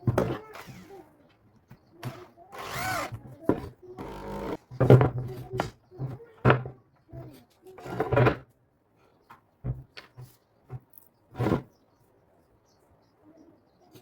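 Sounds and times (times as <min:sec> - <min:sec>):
power drill whining: 0:00.5 - 0:00.9, 0:02.1 - 0:03.2, 0:04.0 - 0:04.6.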